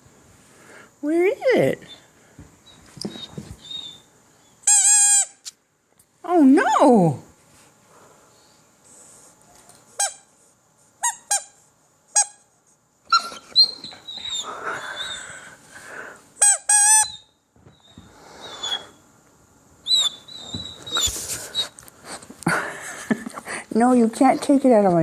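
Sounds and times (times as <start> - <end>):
squeaky toy squeaking: 4.6 - 5.4, 11.0 - 12.5, 16.4 - 17.3, 19.9 - 21.1
rustling: 20.3 - 22.4.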